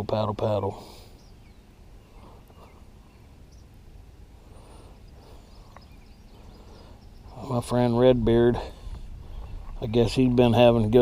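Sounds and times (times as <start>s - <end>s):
faint high chirp: 1.1s - 3.8s, 5.0s - 7.6s
wind rumble on microphone: 5.7s - 11.0s.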